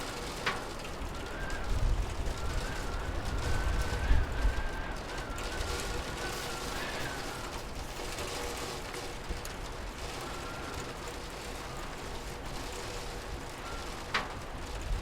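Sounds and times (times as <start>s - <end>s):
rain hissing: 2.4s - 8.8s.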